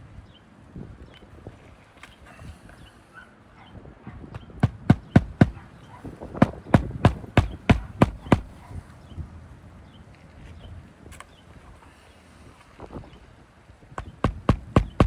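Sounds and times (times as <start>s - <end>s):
hammer driving roofing nails: 4.4s - 5.6s, 6.3s - 8.6s, 14.0s - 15.0s.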